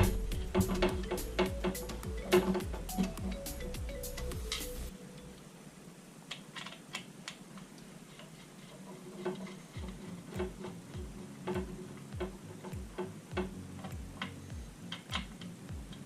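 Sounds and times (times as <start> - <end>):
music with steady beat: 0.0 - 5.0, 9.8 - 16.0.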